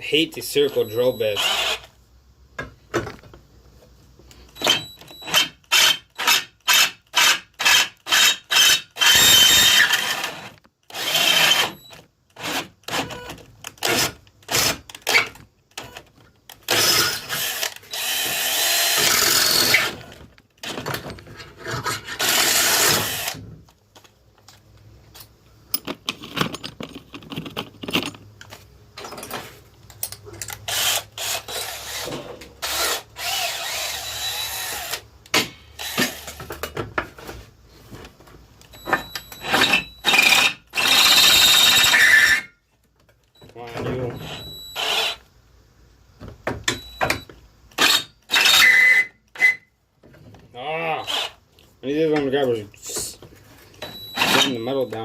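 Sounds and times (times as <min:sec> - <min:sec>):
power drill boring into metal: 0:01.0 - 0:01.9, 0:04.6 - 0:13.2, 0:16.7 - 0:20.1, 0:22.1 - 0:23.4, 0:30.7 - 0:35.0, 0:35.8 - 0:36.4, 0:39.4 - 0:42.5, 0:44.2 - 0:45.2, 0:47.8 - 0:49.6, 0:51.0 - 0:51.4, 0:54.2 - 0:54.9.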